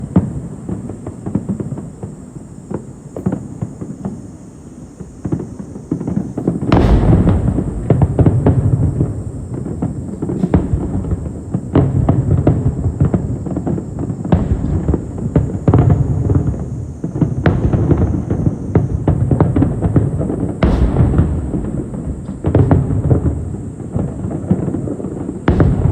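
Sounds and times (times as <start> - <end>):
fireworks booming and crackling: 0.0 - 25.9.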